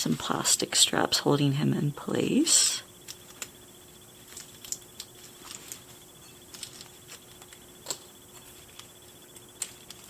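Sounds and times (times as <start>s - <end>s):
steady room hum: 0.0s - 10.0s
plastic packaging clicks and rustles: 4.2s - 10.0s.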